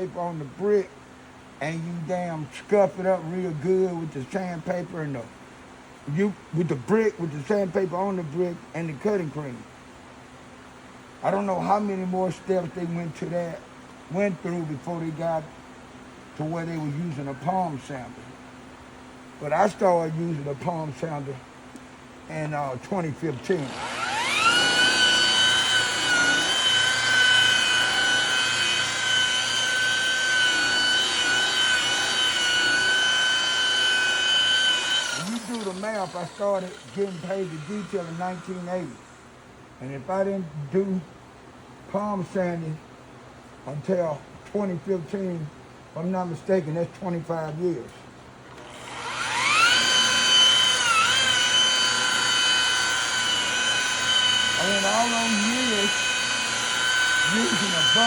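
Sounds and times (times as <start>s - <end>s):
rotary buffer motor whine: 19.1s - 39.3s, 48.4s - 58.0s.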